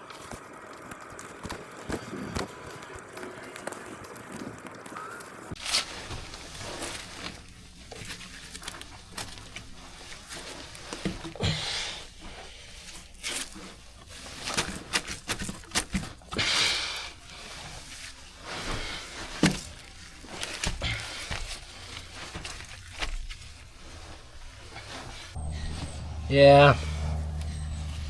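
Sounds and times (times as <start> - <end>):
scraping rustles: 1.7 - 11.4, 17.0 - 28.0.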